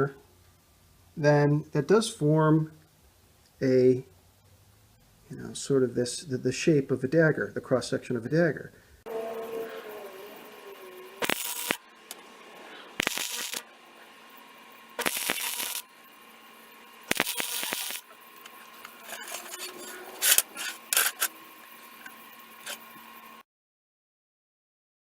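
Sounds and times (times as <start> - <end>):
faint steady hum: 0.0 - 23.4
arc welding bursts: 9.4 - 23.4.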